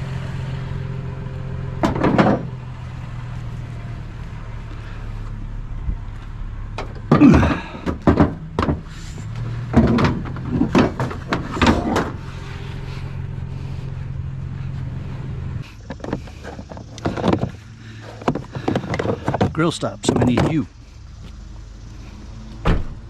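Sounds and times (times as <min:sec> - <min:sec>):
truck engine idling: 0:00.0 - 0:23.0
knocks and clatters: 0:01.8 - 0:02.6, 0:06.8 - 0:12.2, 0:15.7 - 0:20.7.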